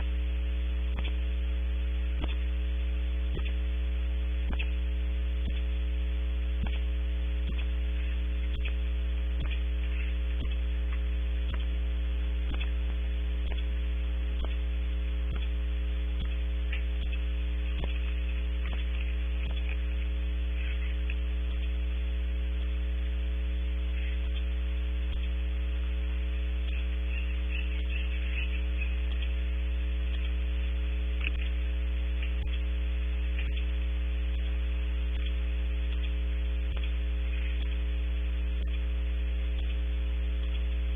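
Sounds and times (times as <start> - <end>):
electrical mains hum: 0.0 - 40.9
steady tones: 0.0 - 40.9
faint clicks: 0.9 - 1.2, 4.4 - 4.8, 5.4 - 5.8, 6.6 - 11.8, 12.4 - 15.6, 16.2 - 21.8, 23.9 - 25.5, 27.9 - 40.8.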